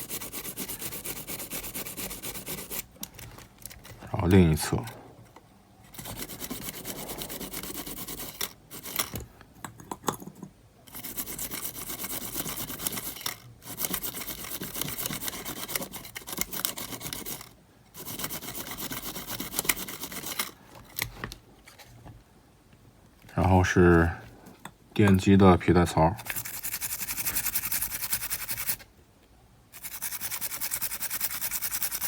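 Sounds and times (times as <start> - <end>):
scrubbing on small metal parts: 26.2 - 28.8, 29.8 - 32.0.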